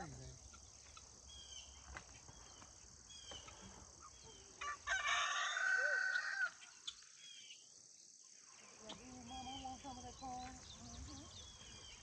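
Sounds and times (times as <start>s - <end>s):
crickets chirping: 0.0s - 12.0s
rooster crowing: 4.6s - 6.6s.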